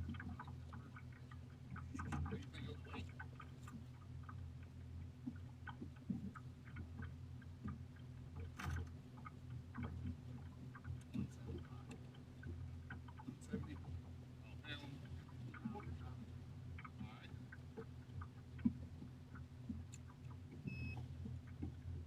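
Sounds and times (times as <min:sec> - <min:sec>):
boat motor humming: 0:00.0 - 0:22.0
small clicks and taps: 0:16.8 - 0:21.8.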